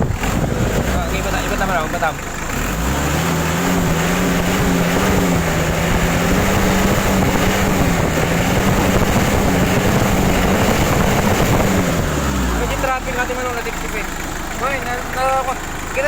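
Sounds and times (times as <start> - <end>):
vehicle engine revving: 0.0 - 16.0.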